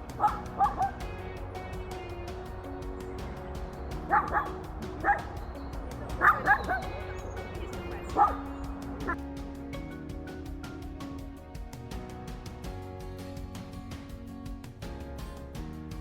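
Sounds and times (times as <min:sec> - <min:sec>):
background music with held notes: 0:00.0 - 0:16.0
dog barking: 0:00.1 - 0:01.0, 0:04.0 - 0:05.4, 0:06.1 - 0:07.1, 0:08.1 - 0:09.2.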